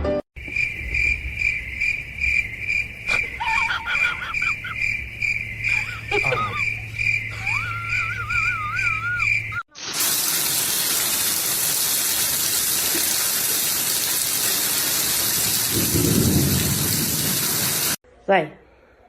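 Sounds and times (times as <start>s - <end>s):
insect-like chirping: 0.4s - 9.6s
wavering whistle-like tone: 7.3s - 9.6s
running water rushing: 9.7s - 18.0s.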